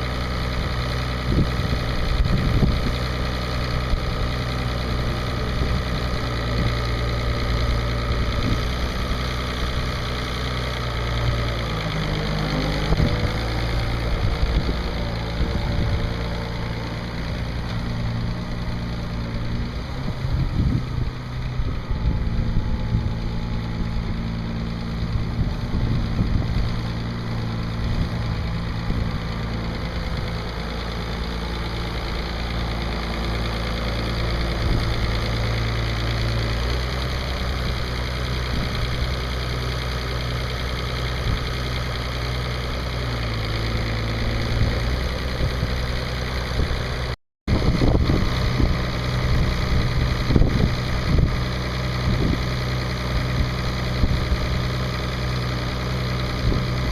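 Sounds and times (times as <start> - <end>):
diesel engine idling: 0.0 - 56.9.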